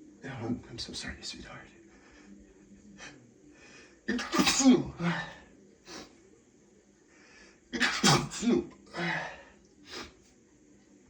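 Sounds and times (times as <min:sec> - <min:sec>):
man sneezing: 0:04.1 - 0:05.3, 0:07.8 - 0:10.1.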